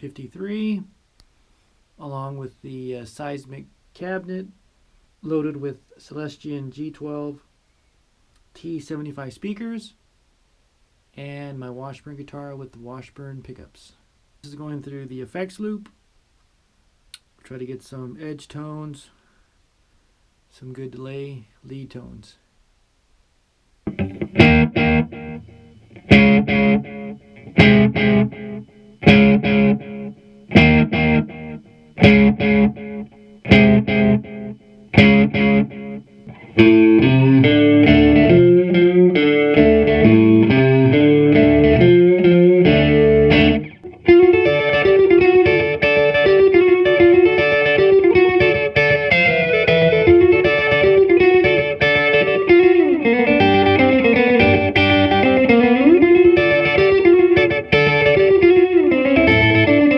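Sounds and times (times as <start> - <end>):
distorted electric guitar: 23.8 - 59.9.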